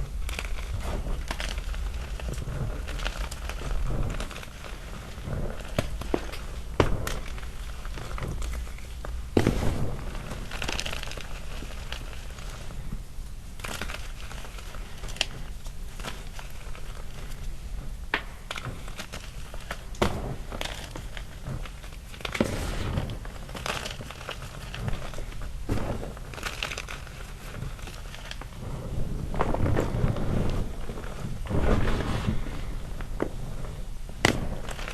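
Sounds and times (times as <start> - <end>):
chalk chunks snapping: 0.0 - 13.0, 18.1 - 28.6, 34.2 - 34.9
chalk chunks crushing: 0.0 - 34.9.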